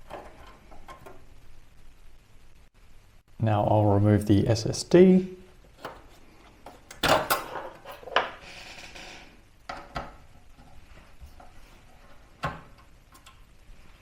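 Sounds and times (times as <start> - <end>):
small hard clicks and knocks: 9.6 - 13.4.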